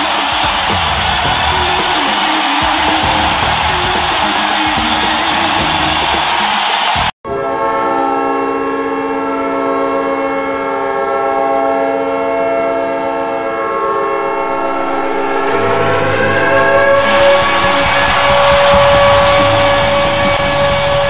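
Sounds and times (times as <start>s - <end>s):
crowd noise: 0.0s - 7.4s, 14.2s - 21.0s
music: 0.0s - 7.8s, 14.2s - 21.0s
hockey goal horn blast: 14.2s - 21.0s.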